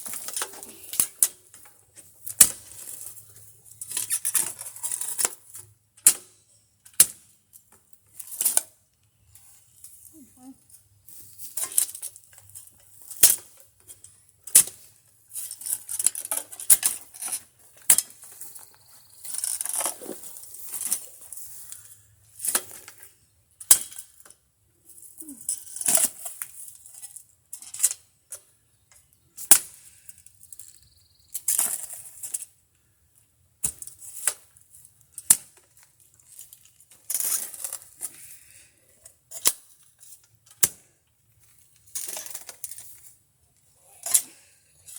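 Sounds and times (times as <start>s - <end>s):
scraping and scooping dirt: 11.0s - 23.2s.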